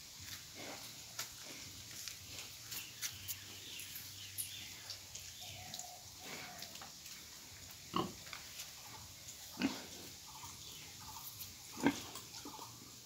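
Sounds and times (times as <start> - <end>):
faint high-pitched pig calls: 5.6 - 6.9, 8.9 - 12.9
pigs grunting: 5.8 - 6.8, 7.9 - 8.2, 8.9 - 12.9.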